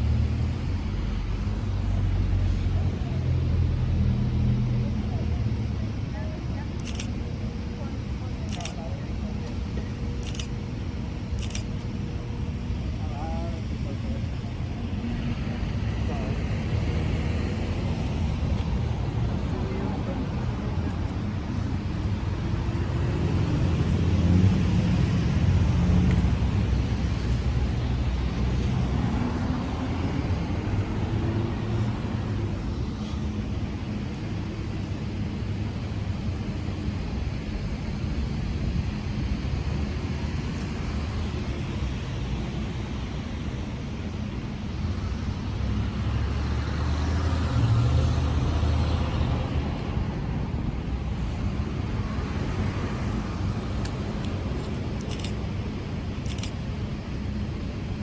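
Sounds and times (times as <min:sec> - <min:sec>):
road traffic rumble: 0:00.0 - 0:58.0.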